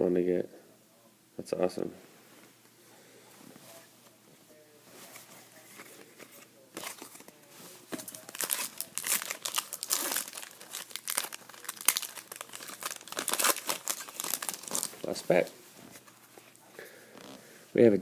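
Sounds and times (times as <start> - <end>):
foil wrapper crinkling and tearing: 8.0 - 15.2.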